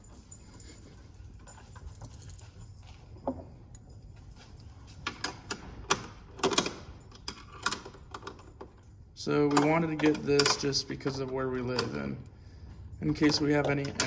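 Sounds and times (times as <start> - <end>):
small metal parts jangling: 0.0 - 14.0.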